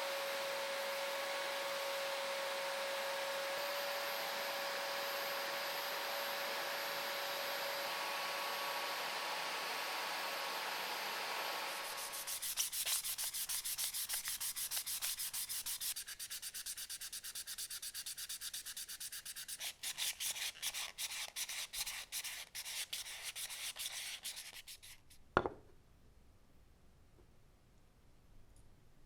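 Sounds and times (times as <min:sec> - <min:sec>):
sandpaper rubbing back and forth: 0:11.7 - 0:25.2
single knock: 0:25.4 - 0:25.7.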